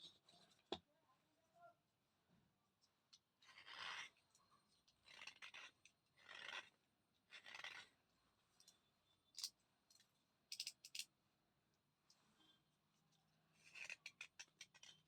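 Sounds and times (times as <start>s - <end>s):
slate pencil being chewed: 5.0s - 6.7s, 7.3s - 7.9s.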